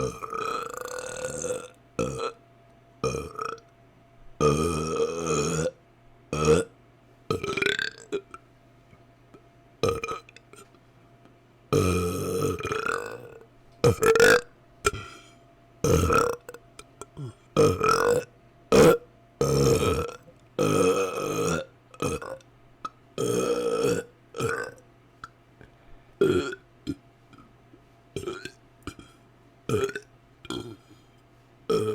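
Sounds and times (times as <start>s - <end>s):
person belching: 0.0s - 2.4s, 3.0s - 3.6s, 4.4s - 6.7s, 7.3s - 8.4s, 9.8s - 10.7s, 11.7s - 15.1s, 15.8s - 22.5s, 23.2s - 24.8s, 26.2s - 27.5s, 28.2s - 30.9s, 31.7s - 31.9s.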